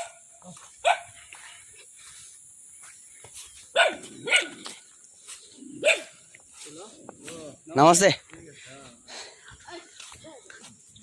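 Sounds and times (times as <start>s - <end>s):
dog barking: 0.0s - 0.2s, 0.8s - 1.2s, 3.7s - 4.8s, 5.8s - 6.2s.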